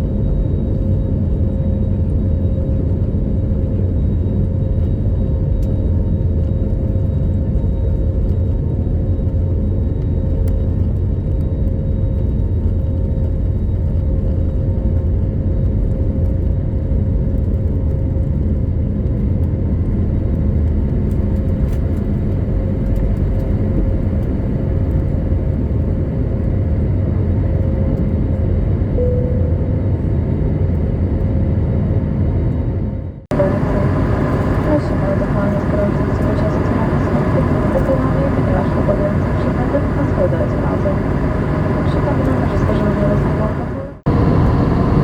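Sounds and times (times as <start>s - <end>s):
airplane cabin rumble: 0.0s - 45.0s
faint steady hum: 33.3s - 45.0s.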